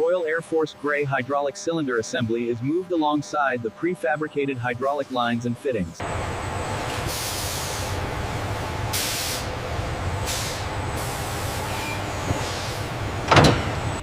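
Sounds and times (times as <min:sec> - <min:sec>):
machinery rumble: 0:00.0 - 0:14.0
air hiss bursts: 0:06.8 - 0:13.5.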